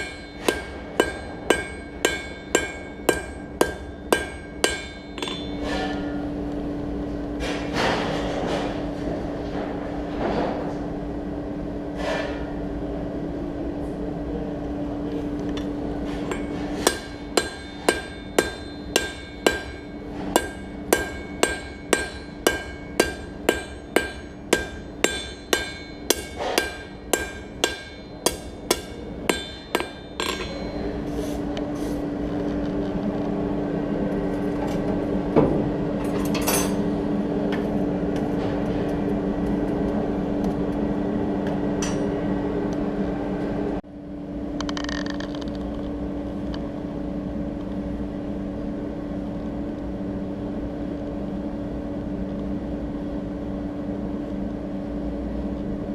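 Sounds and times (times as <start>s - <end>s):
hammer ringing on anvil: 0.0s - 6.3s, 16.3s - 31.1s
steady hum: 0.0s - 55.9s.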